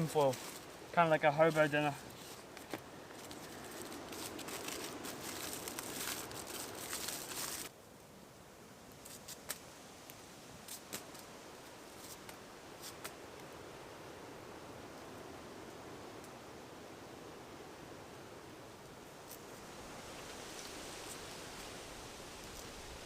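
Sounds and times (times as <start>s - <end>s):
aluminium foil crinkling and tearing: 0.0s - 0.7s, 1.5s - 7.7s.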